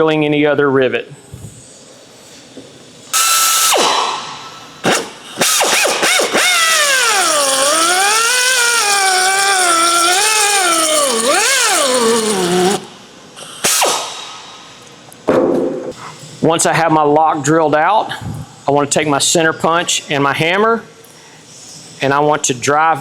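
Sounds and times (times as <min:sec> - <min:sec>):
drill whining: 0:03.1 - 0:14.3.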